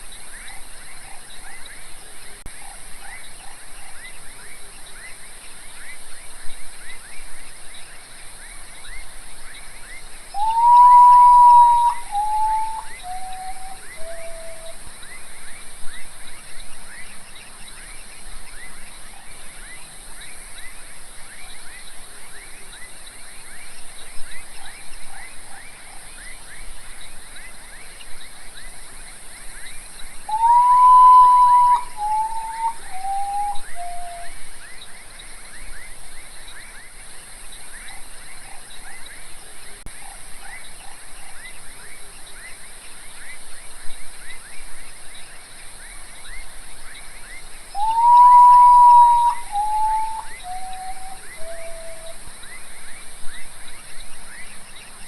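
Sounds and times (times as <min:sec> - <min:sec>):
steady high hiss: 0:00.0 - 0:55.0
bird whistling mournful song: 0:09.9 - 0:15.2, 0:30.2 - 0:34.4, 0:47.7 - 0:52.6.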